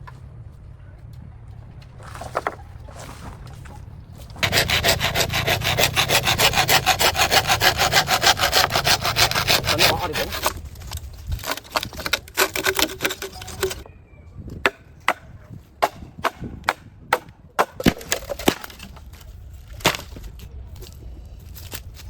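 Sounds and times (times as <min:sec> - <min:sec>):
wood being sawn: 0:02.0 - 0:13.8.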